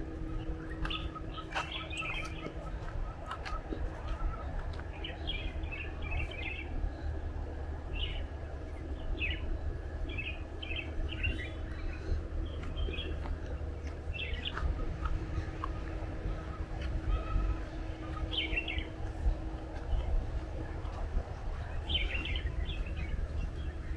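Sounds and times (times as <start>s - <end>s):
birds chirping: 0.0s - 23.9s
steady low rumble: 0.0s - 23.9s.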